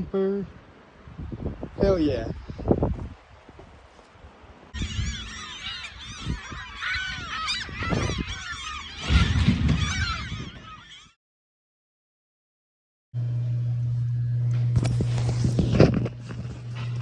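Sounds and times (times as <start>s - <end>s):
flock of birds chirping: 4.8s - 11.2s.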